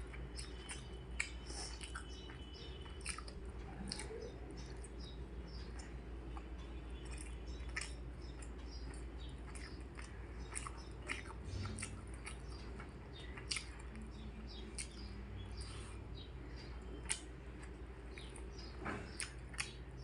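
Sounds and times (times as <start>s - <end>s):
person chewing food: 0.0s - 20.0s
wet mouth clicks and smacks: 0.4s - 4.2s, 17.0s - 17.3s.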